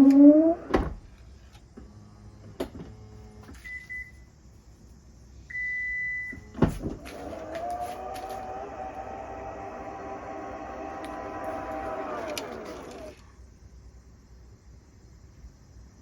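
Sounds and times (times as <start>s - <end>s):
liftgate creaking groan: 0.0s - 1.0s, 7.0s - 13.2s
faint motor hum: 6.4s - 13.4s.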